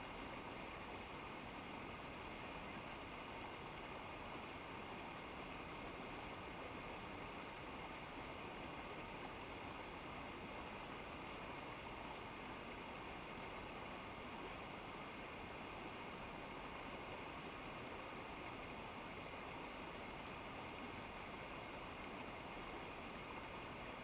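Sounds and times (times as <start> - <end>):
rushing river water: 0.0 - 24.0.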